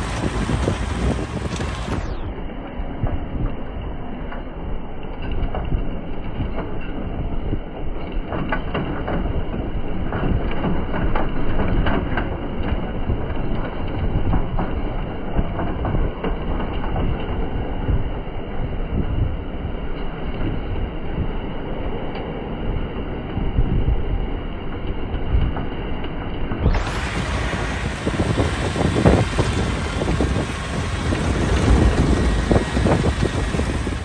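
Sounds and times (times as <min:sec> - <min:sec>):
rattles and knocks: 0:00.0 - 0:02.3, 0:26.7 - 0:34.0
vehicle engine rumble: 0:00.0 - 0:34.0.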